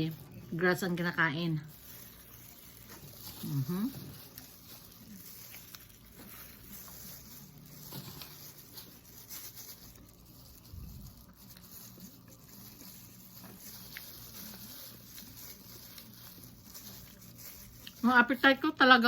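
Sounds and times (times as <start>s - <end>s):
close-up chewing: 0.0s - 18.1s.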